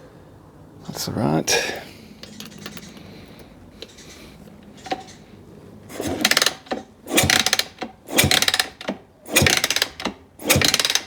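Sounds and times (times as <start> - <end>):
engine being turned over: 4.6 - 5.3, 5.9 - 11.0.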